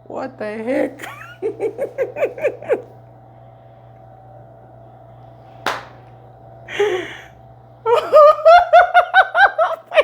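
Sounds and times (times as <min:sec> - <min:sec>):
steady low hum: 0:00.0 - 0:10.0
breathy exhale: 0:06.7 - 0:07.4.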